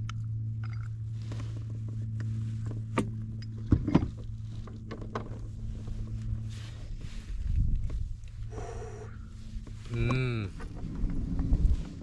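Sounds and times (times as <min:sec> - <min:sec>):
knocks and clicks of gear: 0:00.0 - 0:05.9
steady low hum: 0:00.0 - 0:12.0.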